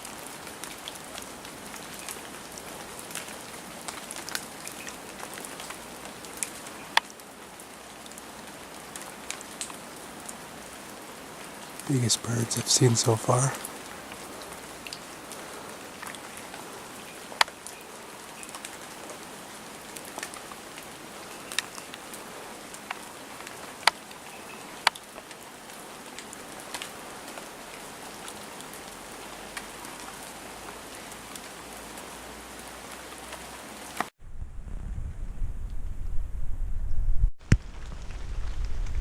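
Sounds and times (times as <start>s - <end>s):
heavy raindrops striking: 0.0s - 34.1s
steady rain: 0.0s - 34.2s, 37.4s - 39.0s
low rumble: 34.2s - 39.0s.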